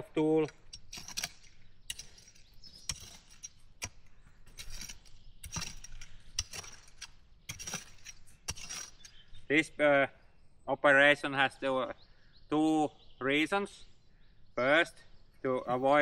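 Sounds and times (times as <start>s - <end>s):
hand tool scraping soil: 0.2s - 9.4s.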